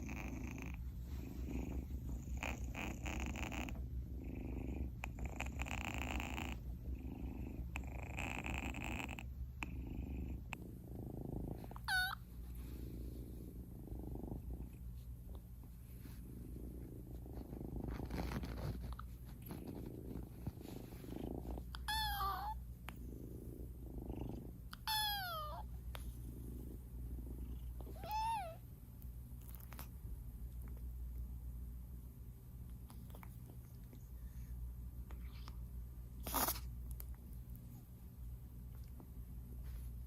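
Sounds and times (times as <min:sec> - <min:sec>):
kitten purring: 0:00.0 - 0:31.6, 0:32.2 - 0:40.0
kitten mewing: 0:24.7 - 0:25.6.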